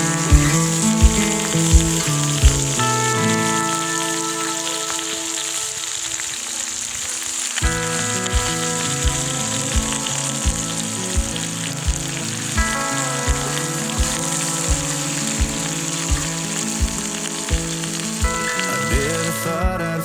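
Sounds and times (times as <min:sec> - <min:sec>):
drum beat: 0:00.0 - 0:03.3, 0:07.6 - 0:20.0
food sizzling in oil: 0:00.0 - 0:20.0
instrumental country music: 0:00.0 - 0:20.0.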